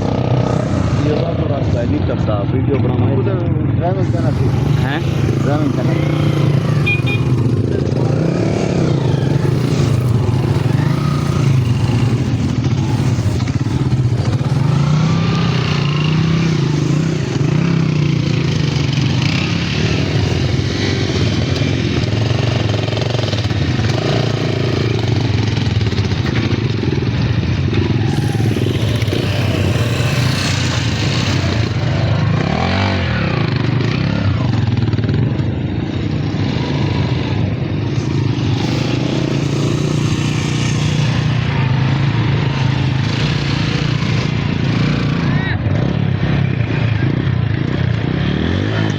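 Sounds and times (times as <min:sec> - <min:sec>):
vehicle engine running: 0:00.0 - 0:33.7.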